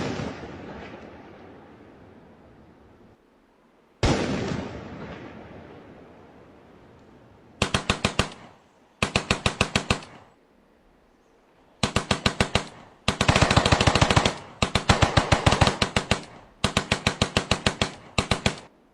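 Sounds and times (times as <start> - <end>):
automatic gunfire bursts: 7.6 - 10.4, 11.8 - 18.7.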